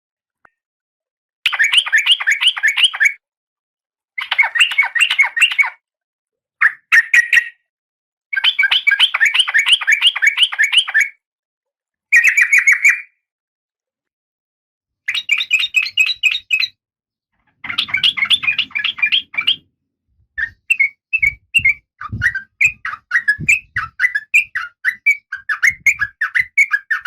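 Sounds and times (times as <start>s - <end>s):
bird chattering calls: 17.6s - 19.6s.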